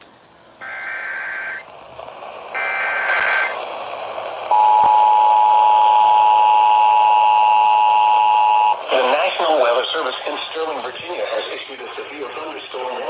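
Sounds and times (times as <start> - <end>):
warbling data tones: 0.6 - 1.7, 2.4 - 3.6
two-tone attention signal: 2.6 - 3.6, 4.5 - 8.8.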